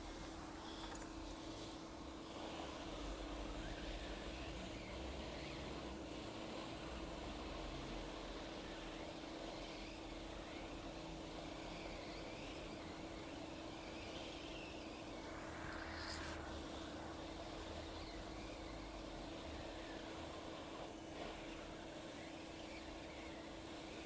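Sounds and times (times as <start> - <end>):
hot-air station blowing: 12.2 - 22.0.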